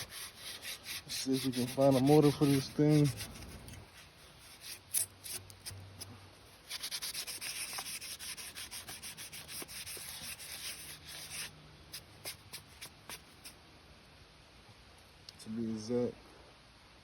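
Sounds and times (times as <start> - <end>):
rapid scrubbing strokes: 0.0 - 5.8, 6.6 - 11.5.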